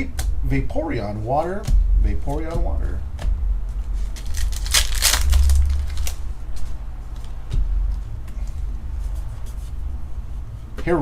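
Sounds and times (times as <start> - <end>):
foil and cards crinkling: 3.8 - 7.4.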